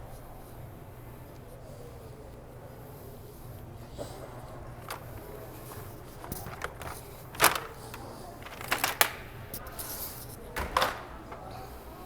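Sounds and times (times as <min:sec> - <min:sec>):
steady low hum: 0:00.0 - 0:12.0
handling knocks and clicks: 0:04.0 - 0:11.7.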